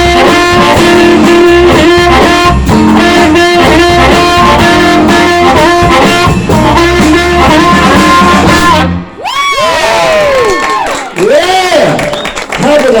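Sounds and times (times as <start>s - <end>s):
live blues band playing: 0.0s - 9.2s
electric guitar: 0.0s - 9.3s.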